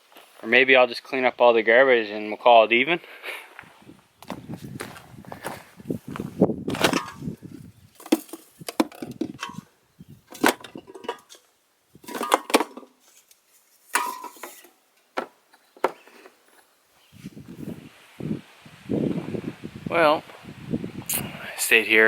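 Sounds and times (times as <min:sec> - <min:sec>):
wood knocks and cracks: 0:06.7 - 0:07.3, 0:08.0 - 0:09.4.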